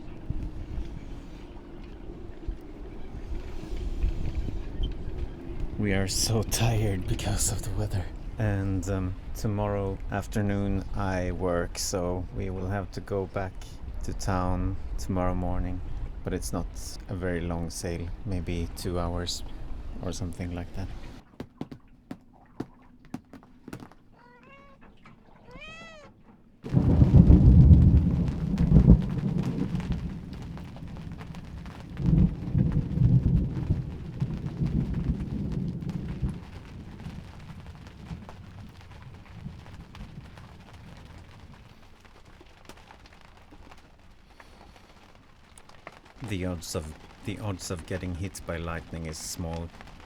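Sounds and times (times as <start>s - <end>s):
thunder clap rolling: 0.0s - 21.2s, 26.6s - 50.0s
cat meowing: 24.1s - 26.2s.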